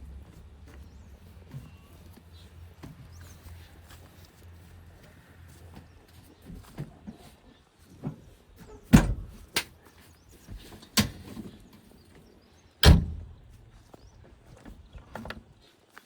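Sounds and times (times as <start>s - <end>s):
backhoe loader heavy thuds: 8.9s - 9.5s.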